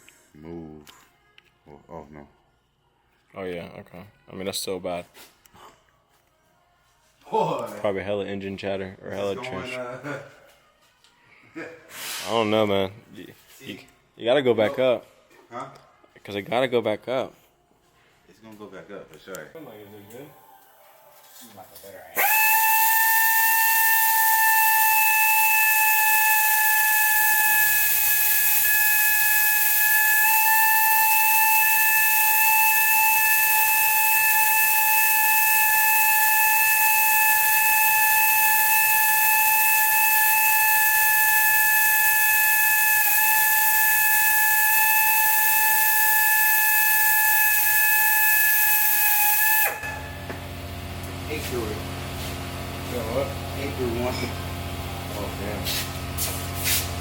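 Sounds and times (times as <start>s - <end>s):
power tool motor whining: 22.2s - 50.4s.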